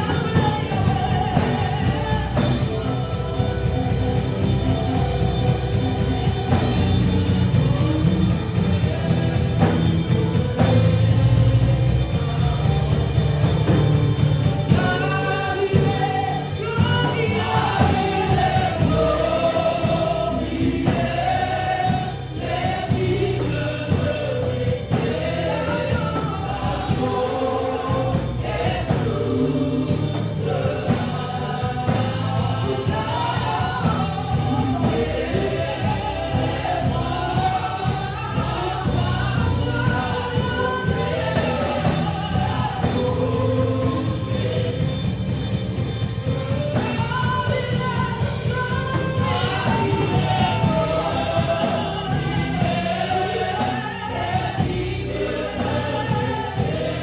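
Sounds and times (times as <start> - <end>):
band playing: 0.0 - 57.0
choir singing gospel song: 0.0 - 57.0.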